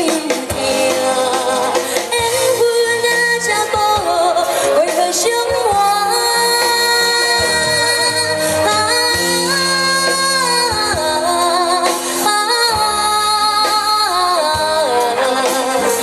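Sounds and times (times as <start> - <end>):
live band accompaniment: 0.0 - 16.0
woman singing pop ballad: 0.0 - 16.0.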